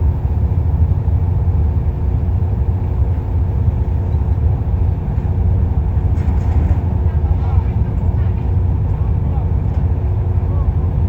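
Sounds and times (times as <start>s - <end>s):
constant hum: 0.0s - 11.0s
diesel engine droning: 0.0s - 11.0s.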